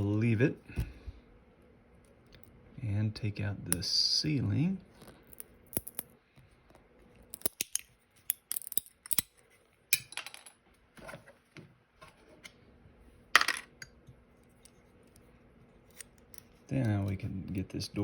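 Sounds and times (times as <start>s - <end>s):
parts clattering: 13.4s - 13.9s.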